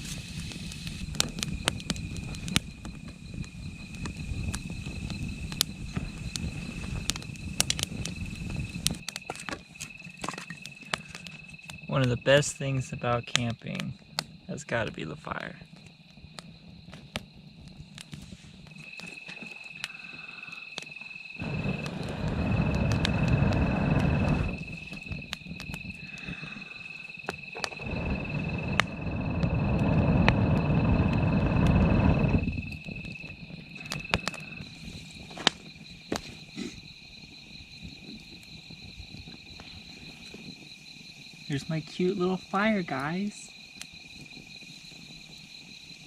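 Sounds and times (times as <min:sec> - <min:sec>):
insect trilling: 0:00.0 - 0:18.0, 0:18.7 - 0:46.0
campfire crackling: 0:00.0 - 0:46.0
loud low rushing noise: 0:21.4 - 0:25.2, 0:27.6 - 0:33.0.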